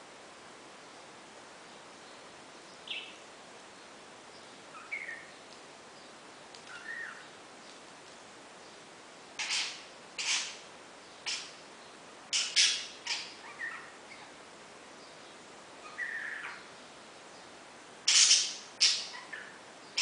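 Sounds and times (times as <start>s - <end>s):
thin bird chirps: 4.3s - 7.8s, 9.4s - 14.3s, 15.0s - 16.8s, 18.1s - 20.0s
parakeet squawking: 9.4s - 10.6s, 11.2s - 11.6s, 12.3s - 14.2s, 18.1s - 20.0s.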